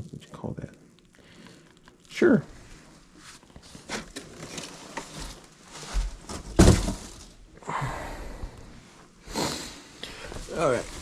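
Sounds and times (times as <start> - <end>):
packaging rustling and clicking: 3.4 - 7.3
object set down with a thunk: 6.3 - 7.3.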